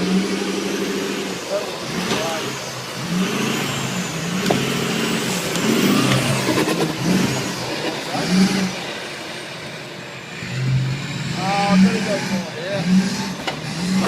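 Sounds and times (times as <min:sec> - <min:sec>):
engine revving: 0:00.0 - 0:14.0
knocks: 0:04.4 - 0:04.7.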